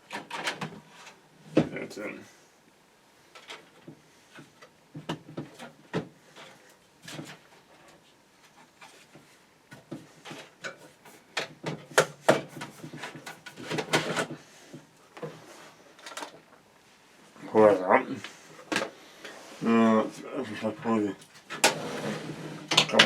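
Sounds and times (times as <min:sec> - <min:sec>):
plastic and metal parts clattering: 0:00.0 - 0:01.2, 0:03.3 - 0:08.0, 0:09.9 - 0:14.4, 0:15.9 - 0:16.5, 0:21.2 - 0:23.0.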